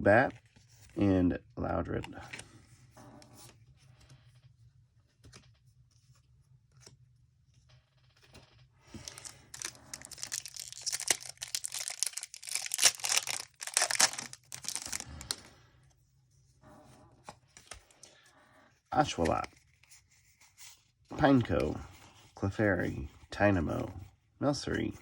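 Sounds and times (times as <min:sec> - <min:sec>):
foil wrapper tearing and crinkling: 0:08.9 - 0:15.4.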